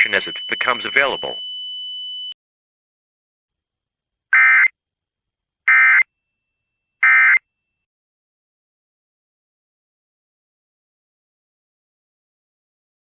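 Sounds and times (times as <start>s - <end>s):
electronic data tone bursts: 0.0s - 1.4s.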